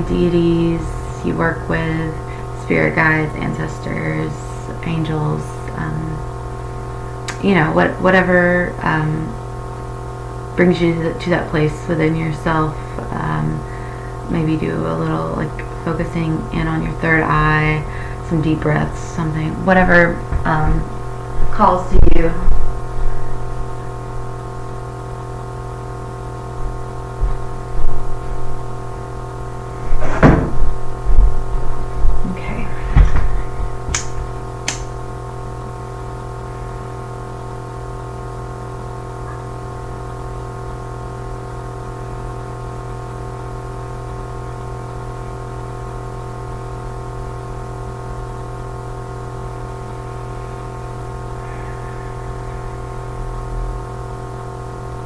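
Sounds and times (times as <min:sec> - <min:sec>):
steady hum of held tones: 0:00.0 - 0:55.0
handling knocks and thumps: 0:29.8 - 0:31.4, 0:32.6 - 0:34.8
lighter flicking clicks: 0:33.9 - 0:35.0.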